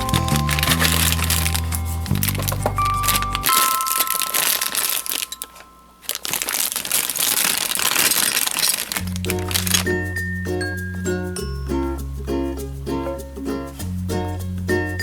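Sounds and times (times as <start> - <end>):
background music: 0.0 - 5.2
packaging crinkling: 0.0 - 10.0.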